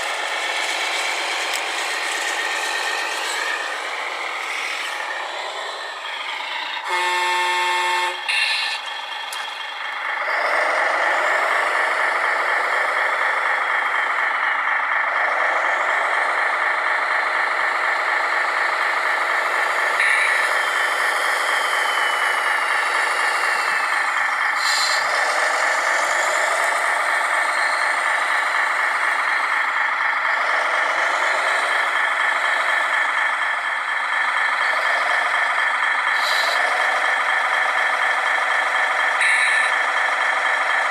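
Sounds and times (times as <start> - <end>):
short steady tone: 6.8 - 8.8.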